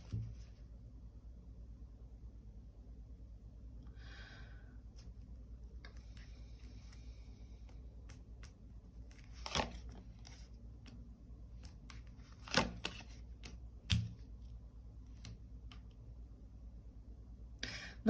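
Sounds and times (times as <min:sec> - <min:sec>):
cards snapping and slapping: 0:07.6 - 0:11.0, 0:11.6 - 0:14.3.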